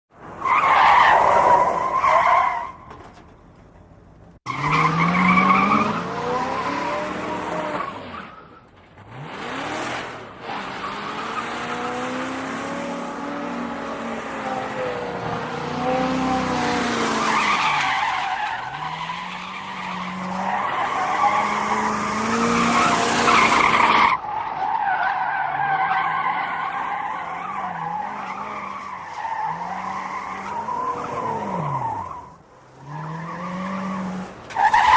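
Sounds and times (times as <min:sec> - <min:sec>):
car tyres squealing: 0:00.2 - 0:03.5, 0:04.5 - 0:34.9
car engine revving: 0:09.0 - 0:17.9, 0:18.5 - 0:24.0.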